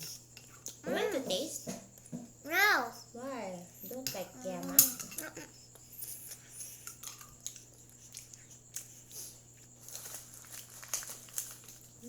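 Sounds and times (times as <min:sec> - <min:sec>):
chewing with crunches: 0:04.2 - 0:12.0.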